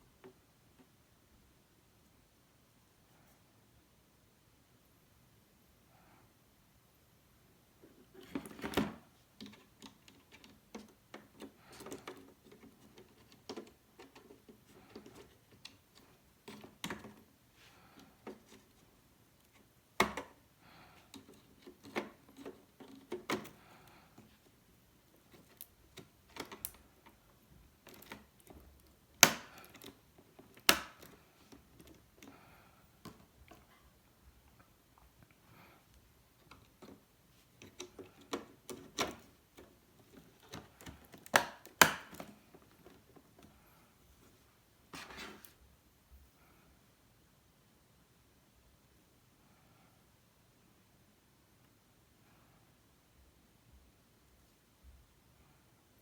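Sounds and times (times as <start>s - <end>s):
clicks and taps handling plastic parts: 7.8s - 17.3s, 17.9s - 20.4s, 21.0s - 33.8s, 36.3s - 43.6s.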